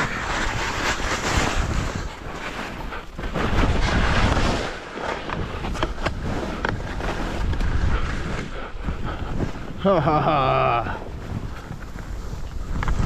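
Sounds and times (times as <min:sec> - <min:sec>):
skis hissing over snow: 0:00.0 - 0:13.0
wind buffeting microphone: 0:10.8 - 0:13.0.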